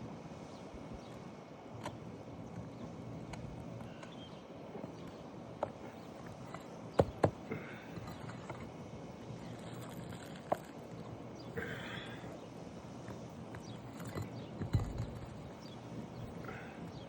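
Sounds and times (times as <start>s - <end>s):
outdoor background noise: 0.0s - 17.0s
hand tools knocking on shingles: 5.6s - 8.7s.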